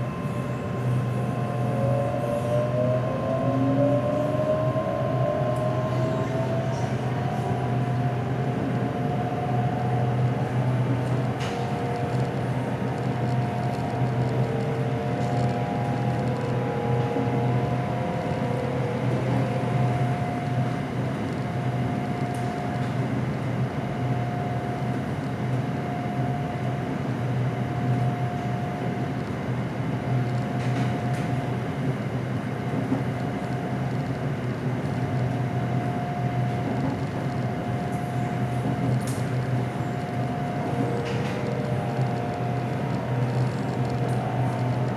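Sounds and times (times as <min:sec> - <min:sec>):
train traction motors whining: 0:00.0 - 0:23.2, 0:32.6 - 0:44.9
low hum and rumble: 0:00.0 - 0:44.9.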